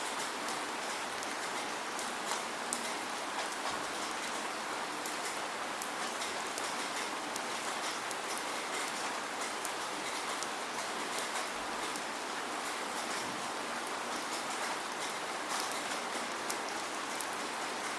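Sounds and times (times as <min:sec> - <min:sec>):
raindrops ticking on a surface: 0:00.0 - 0:17.9
steady rain hiss: 0:00.0 - 0:17.9.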